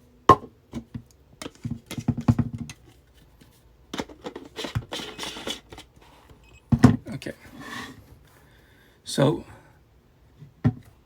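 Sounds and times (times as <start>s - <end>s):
plastic scraping and rustling: 1.4s - 6.3s.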